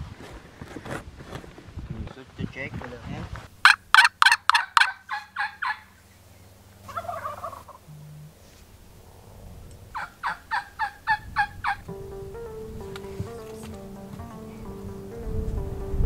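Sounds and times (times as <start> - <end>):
turkey yelping: 3.6 - 6.2, 6.8 - 7.9, 10.0 - 11.9
background music: 11.8 - 16.0.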